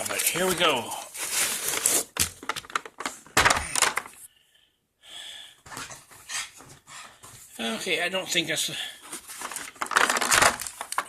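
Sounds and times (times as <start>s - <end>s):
packaging rustling and scraping: 0.0s - 4.2s, 9.0s - 11.0s.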